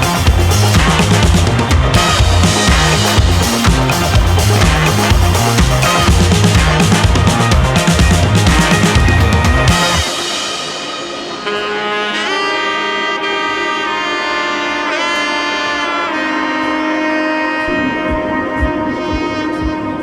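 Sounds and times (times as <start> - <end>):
drum beat: 0.0 - 11.8, 17.8 - 20.0
saxophone melody: 0.0 - 20.0.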